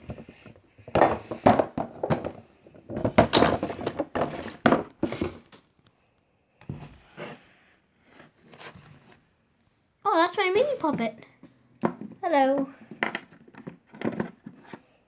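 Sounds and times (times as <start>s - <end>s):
objects knocking: 0.0s - 5.5s, 11.8s - 14.8s
rustling of belongings: 0.0s - 5.9s, 6.6s - 9.3s, 10.2s - 15.0s.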